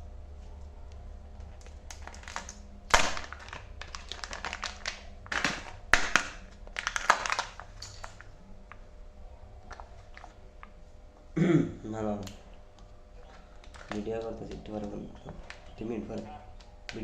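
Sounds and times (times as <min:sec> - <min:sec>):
candy wrapper crinkling and tearing: 0:01.6 - 0:08.3, 0:13.5 - 0:17.0.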